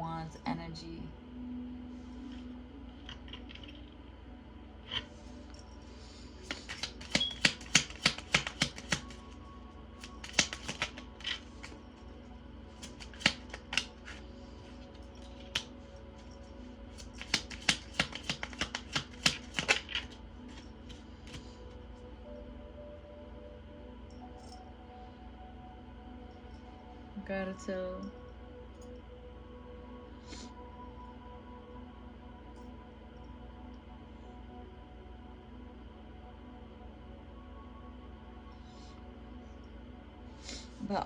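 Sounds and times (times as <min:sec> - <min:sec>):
soft background music: 0:00.0 - 0:41.0
cards being shuffled: 0:06.4 - 0:09.4, 0:10.0 - 0:11.8, 0:12.8 - 0:21.6.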